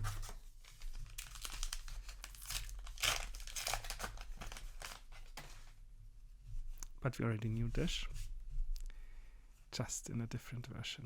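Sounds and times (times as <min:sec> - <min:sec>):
paper wrappers crinkling: 0:00.0 - 0:05.6.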